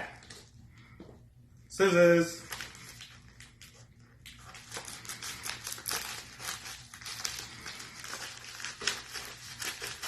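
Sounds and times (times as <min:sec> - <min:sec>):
package wrapping crinkling: 0:02.4 - 0:10.0.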